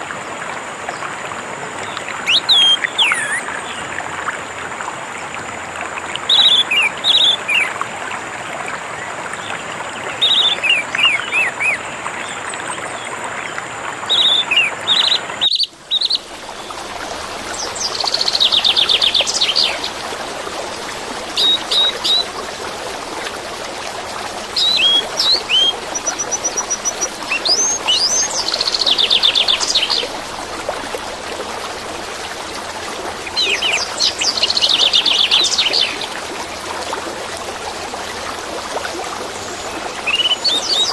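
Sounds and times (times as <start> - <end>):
flowing water rushing: 0.0 - 40.9
bird whistling and trilling: 2.3 - 3.6, 6.3 - 7.7, 21.4 - 22.3, 24.6 - 30.0.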